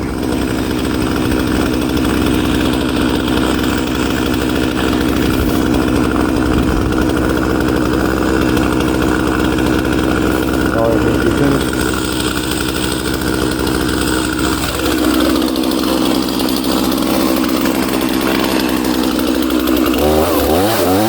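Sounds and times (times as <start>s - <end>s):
chainsaw cutting wood: 0.0s - 21.0s.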